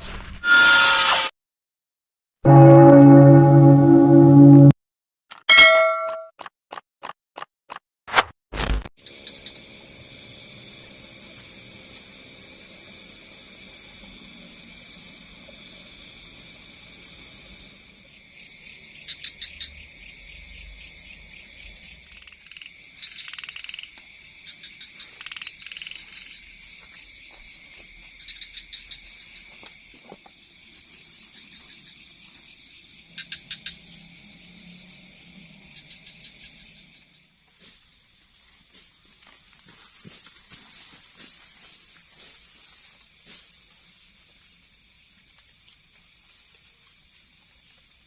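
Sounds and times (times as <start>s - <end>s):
high insect drone: 9.0s - 48.0s
pulsed frog calls: 22.1s - 26.5s.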